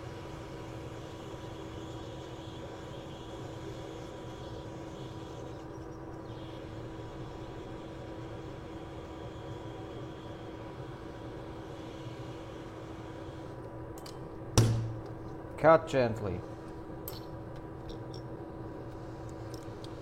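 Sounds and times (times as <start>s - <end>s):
hot air station rushing hiss: 0.0s - 13.6s
constant low hum: 0.0s - 20.0s.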